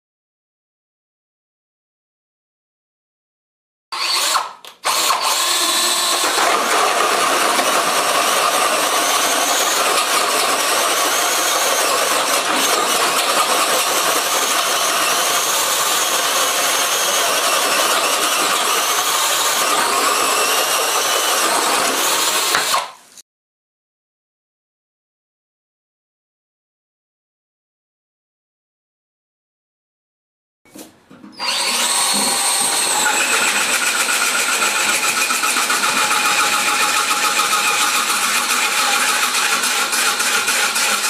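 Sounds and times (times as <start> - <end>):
cordless drill cutting sheet material: 3.9 - 23.2, 31.4 - 41.0.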